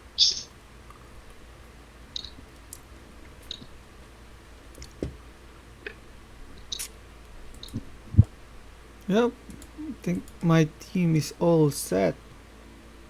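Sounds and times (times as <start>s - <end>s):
steady low hum: 0.0s - 13.0s
computer mouse clicks: 7.5s - 7.8s.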